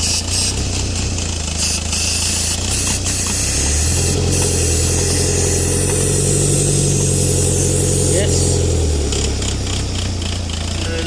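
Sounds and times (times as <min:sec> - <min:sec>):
diesel engine idling: 0:00.0 - 0:11.0
aerosol spray hissing: 0:03.1 - 0:08.3.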